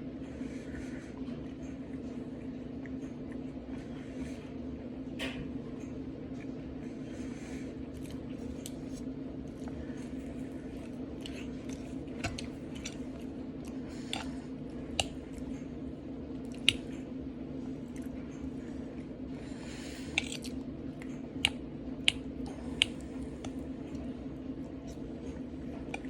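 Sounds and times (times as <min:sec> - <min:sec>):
steady low hum: 0:00.0 - 0:26.0
person chewing food: 0:07.8 - 0:26.0.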